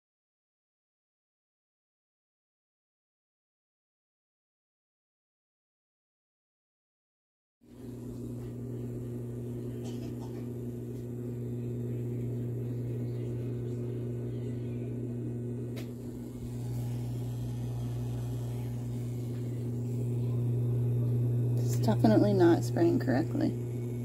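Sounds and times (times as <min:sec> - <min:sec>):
dishwasher pump motor hum: 0:07.7 - 0:24.0.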